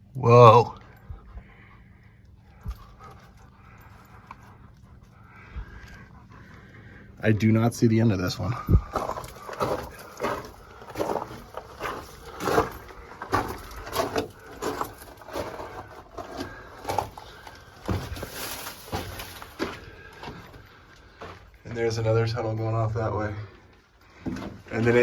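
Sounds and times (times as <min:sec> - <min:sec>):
footsteps crunching on loose rock: 0:08.4 - 0:21.6.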